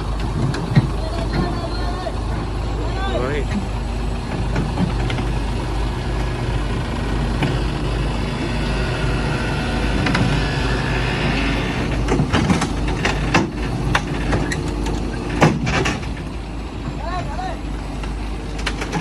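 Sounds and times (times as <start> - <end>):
engine running: 0.0 - 19.0
sharp knocks and clicks: 3.5 - 5.4, 11.9 - 17.0, 18.0 - 19.0.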